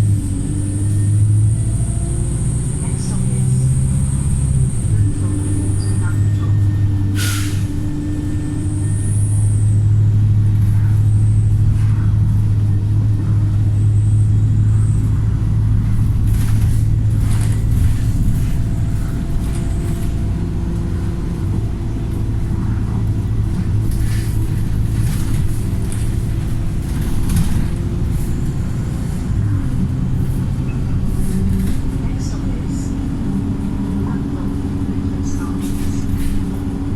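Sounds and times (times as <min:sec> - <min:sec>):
bus diesel engine drone: 0:00.0 - 0:36.9.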